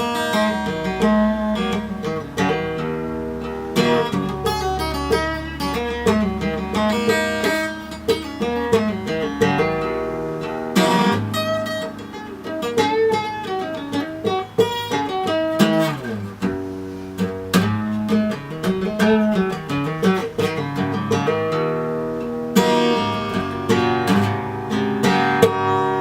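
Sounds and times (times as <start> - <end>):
acoustic guitar playing: 0.0 - 26.0.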